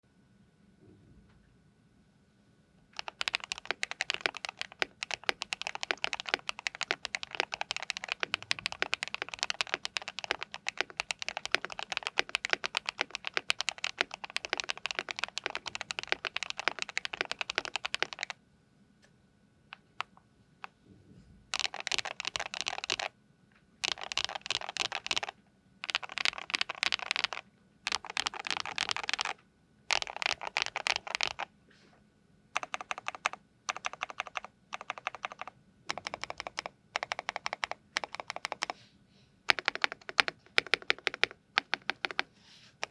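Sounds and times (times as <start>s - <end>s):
mechanical keyboard typing: 3.0s - 18.4s, 21.5s - 23.1s, 23.8s - 31.5s, 32.6s - 38.8s, 39.5s - 42.9s
rapid key presses: 3.0s - 18.4s, 19.7s - 20.8s, 21.5s - 23.1s, 23.8s - 31.5s, 32.6s - 38.8s, 39.5s - 42.9s.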